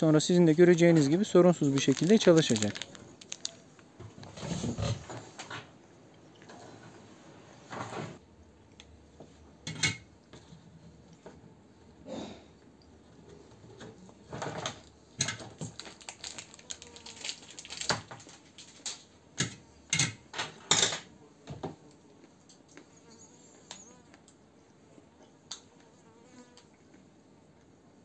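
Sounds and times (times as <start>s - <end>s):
small parts clicking and clattering: 1.6s - 3.9s, 14.6s - 21.0s.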